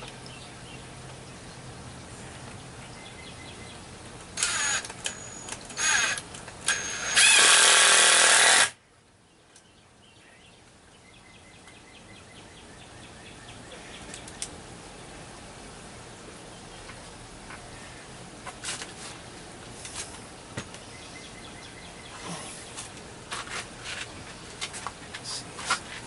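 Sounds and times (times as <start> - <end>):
power drill running: 4.4 - 8.8.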